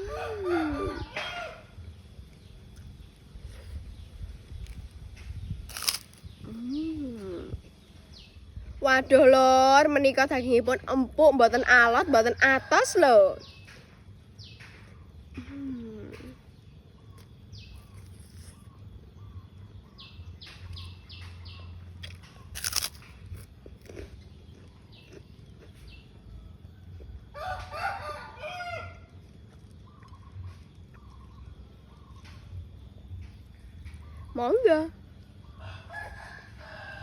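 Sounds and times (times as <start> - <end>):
person chewing: 5.7 - 6.6, 17.1 - 18.8, 22.0 - 26.2.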